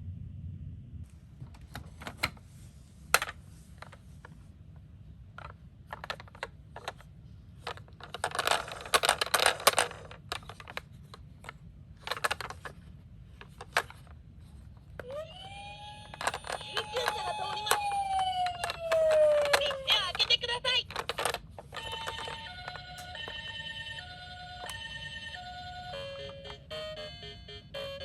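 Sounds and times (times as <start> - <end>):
toy cars clicking and clattering: 3.2 - 4.0, 5.4 - 26.4.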